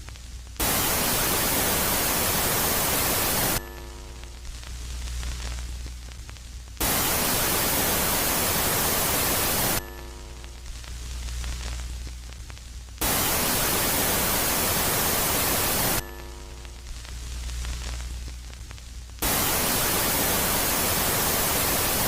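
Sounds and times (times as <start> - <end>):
loud static hiss: 0.0 - 22.0
low hum: 3.2 - 19.7.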